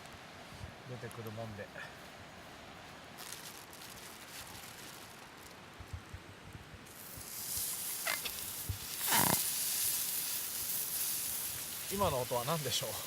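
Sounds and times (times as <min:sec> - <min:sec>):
fish sizzling on griddle: 0:03.1 - 0:06.2, 0:06.8 - 0:13.0.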